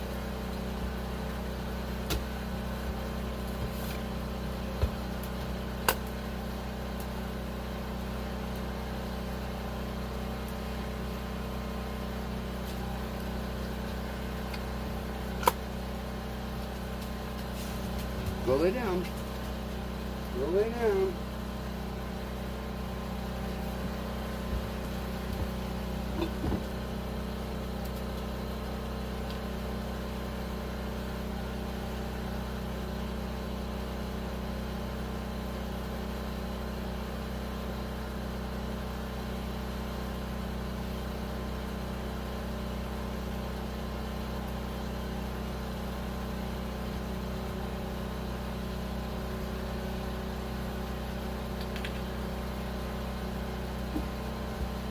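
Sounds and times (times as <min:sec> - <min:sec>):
machine hum: 0:08.9 - 0:27.6, 0:51.1 - 0:54.9.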